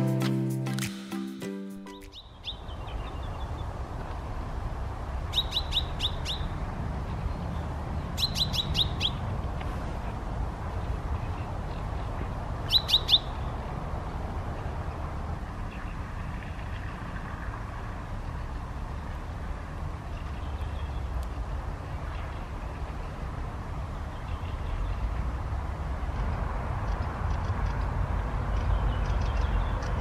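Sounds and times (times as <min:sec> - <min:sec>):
songbird calling sharp high notes: 0:00.0 - 0:03.2, 0:12.7 - 0:13.4
low background noise: 0:02.1 - 0:30.0.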